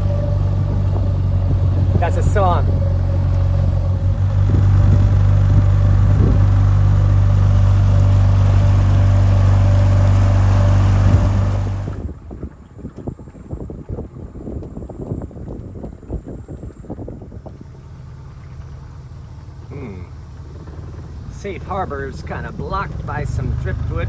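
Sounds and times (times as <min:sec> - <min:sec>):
wind noise: 0:00.0 - 0:18.8
boat motor humming: 0:00.0 - 0:24.0
water splashing: 0:00.0 - 0:24.0.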